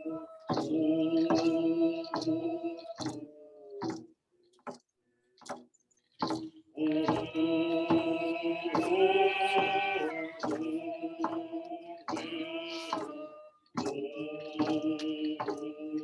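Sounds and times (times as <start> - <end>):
voices singing prayer song: 0.0 - 4.1, 6.7 - 16.0
steady drum beat: 6.2 - 13.1.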